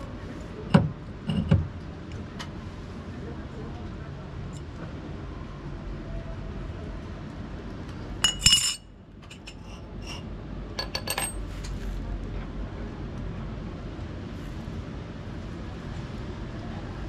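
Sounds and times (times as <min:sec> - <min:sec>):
low steady rumble: 0:00.0 - 0:17.0
metal tools clinking: 0:08.2 - 0:10.2, 0:10.8 - 0:11.4.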